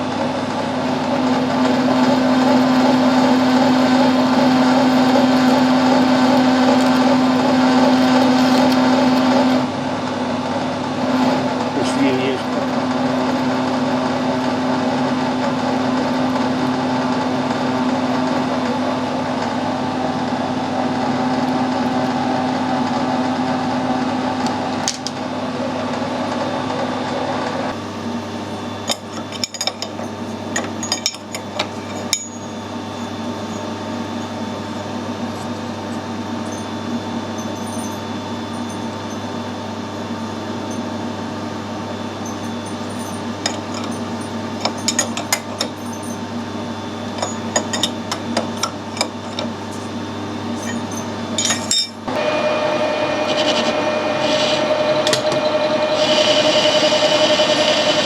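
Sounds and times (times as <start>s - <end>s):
metal lathe humming: 0.0s - 58.0s.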